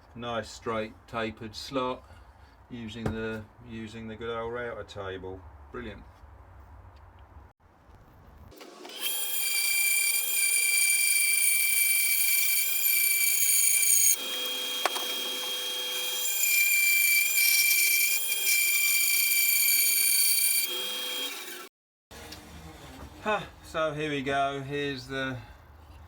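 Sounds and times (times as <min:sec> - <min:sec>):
power saw cutting wood: 0:08.6 - 0:21.7.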